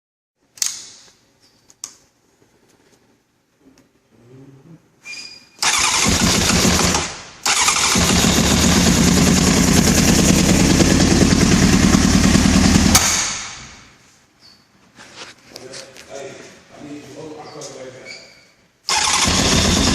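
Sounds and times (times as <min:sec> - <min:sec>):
motorcycle engine cranking: 0:05.6 - 0:10.4, 0:18.9 - 0:19.9.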